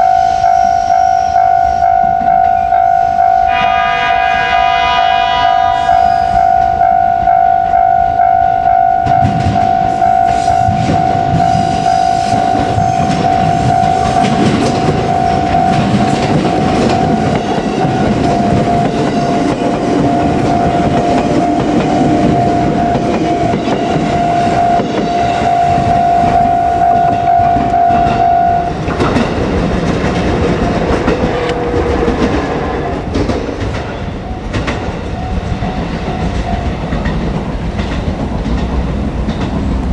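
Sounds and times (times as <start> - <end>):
level-crossing warning bell: 0.0 - 39.9
train rumble: 0.0 - 39.9
train wheels clattering: 9.0 - 39.9.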